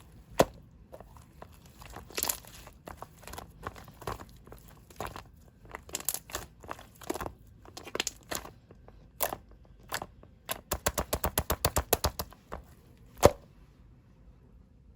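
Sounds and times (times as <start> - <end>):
crinkly material crackling: 0.0 - 10.1.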